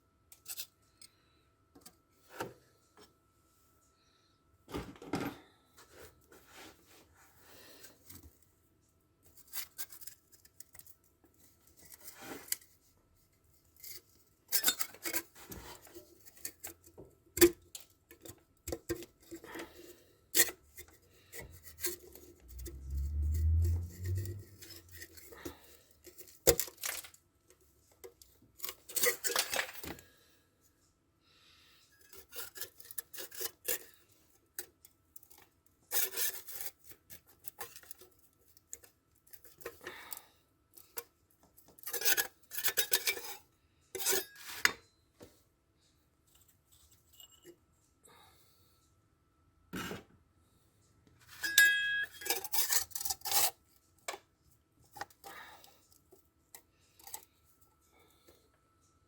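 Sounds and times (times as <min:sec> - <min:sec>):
metal engine parts clinking: 0:51.4 - 0:53.5.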